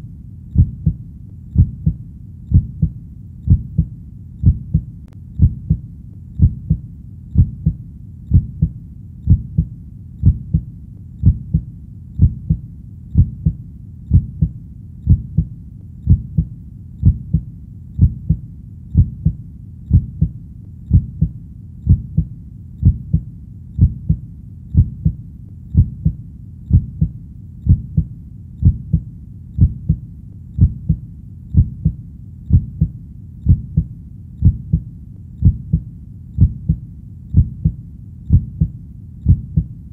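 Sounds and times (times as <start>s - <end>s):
heartbeat double thump: 0.6s - 1.0s, 1.6s - 5.8s, 6.4s - 6.8s, 7.4s - 15.5s, 16.1s - 18.4s, 19.0s - 21.3s, 21.9s - 23.2s, 23.8s - 24.2s, 24.8s - 25.2s, 25.8s - 29.0s, 29.6s - 30.0s, 30.6s - 31.0s, 31.6s - 36.8s, 37.4s - 39.7s.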